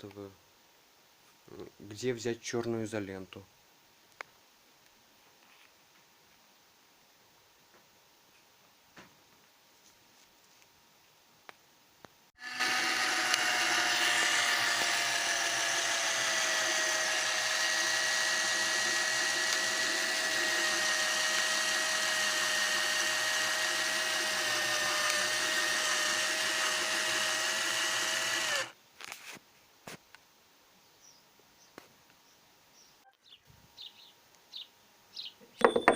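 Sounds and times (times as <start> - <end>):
small power tool motor whining: 12.4 - 28.7.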